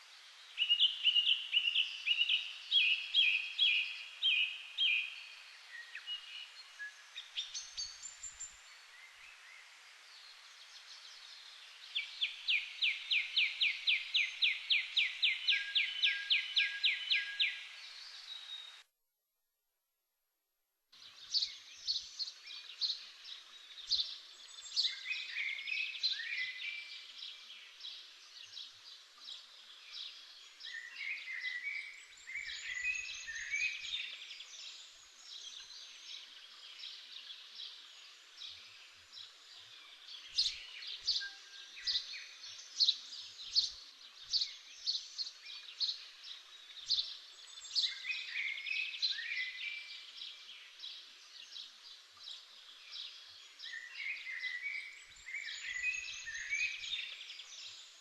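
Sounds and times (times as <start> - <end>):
birds chirping: 21.2 - 58.0.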